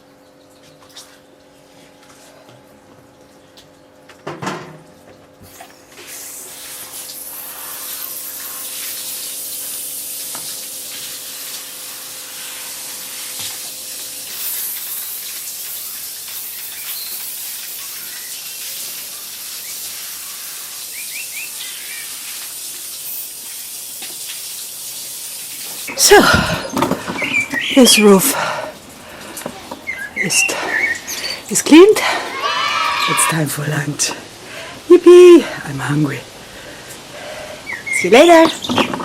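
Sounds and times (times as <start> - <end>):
water spraying hiss: 5.4 - 39.0
birds chirping: 25.8 - 34.6, 35.3 - 39.0.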